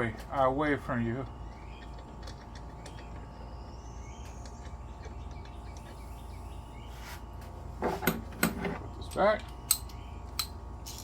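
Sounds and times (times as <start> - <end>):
low background hum: 0.0 - 11.0
faint bird chirps: 1.2 - 7.6.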